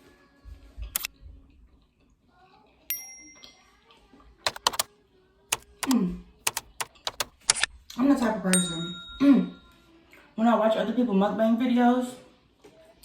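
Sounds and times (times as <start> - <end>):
bright ringing ding: 8.6 - 9.8.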